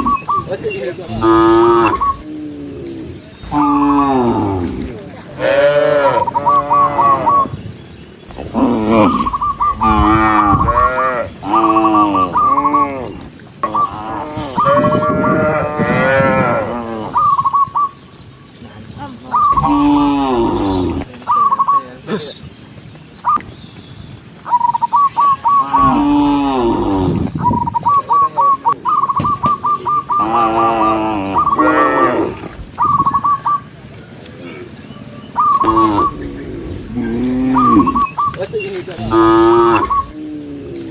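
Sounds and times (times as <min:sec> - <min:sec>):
bird chirping rapidly: 0:00.0 - 0:02.3, 0:06.2 - 0:12.8, 0:35.2 - 0:40.2
cattle mooing: 0:01.1 - 0:07.5, 0:08.3 - 0:17.3, 0:19.5 - 0:21.0, 0:25.6 - 0:27.3, 0:30.1 - 0:32.6, 0:35.6 - 0:38.2, 0:38.9 - 0:40.9.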